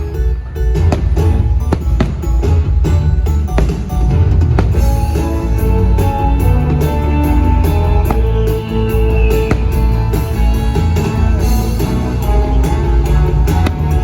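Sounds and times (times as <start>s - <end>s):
music with guitar and drums: 0.0s - 14.0s
fireworks cracking: 0.8s - 12.0s.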